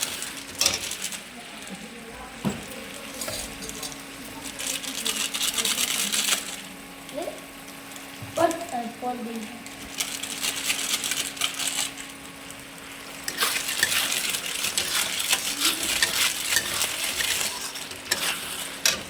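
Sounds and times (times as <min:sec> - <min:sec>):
metal spoon scraping a pan: 0:00.0 - 0:01.1, 0:03.1 - 0:04.0, 0:13.2 - 0:19.0.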